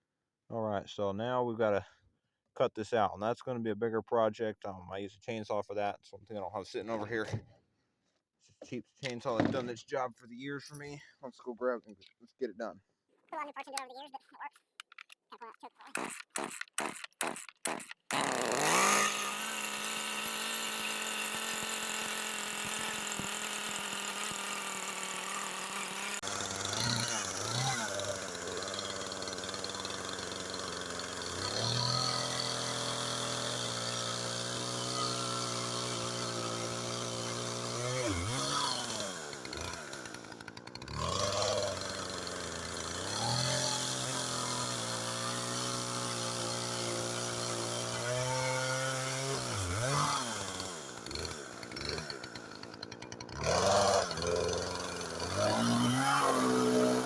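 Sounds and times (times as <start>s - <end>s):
chainsaw cutting wood: 9.0s - 9.7s, 15.8s - 57.0s.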